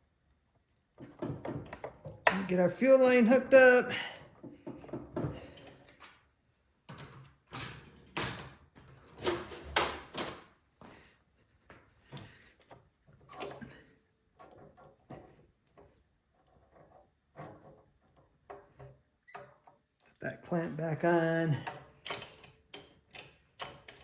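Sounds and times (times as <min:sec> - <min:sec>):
clicks and taps of tools: 0:21.6 - 0:24.0.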